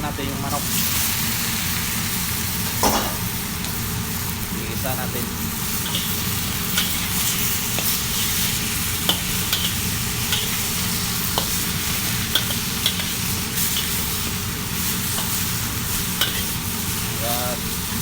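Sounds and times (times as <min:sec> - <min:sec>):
chicken sizzling in a pan: 0:00.1 - 0:18.0
utensil clicking against pan: 0:12.3 - 0:13.2.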